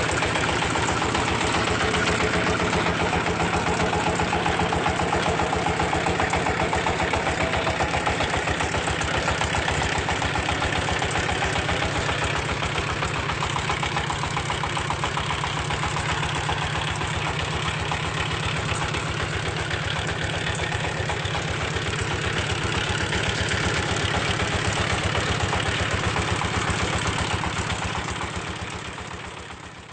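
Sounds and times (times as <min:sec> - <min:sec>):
machine engine running: 0:00.0 - 0:29.9.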